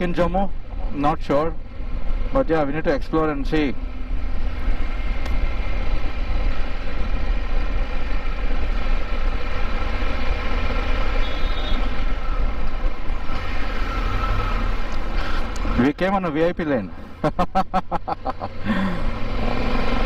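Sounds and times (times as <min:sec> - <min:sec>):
wind rush and road noise: 0:00.0 - 0:15.9
motorcycle engine drone: 0:00.4 - 0:15.8.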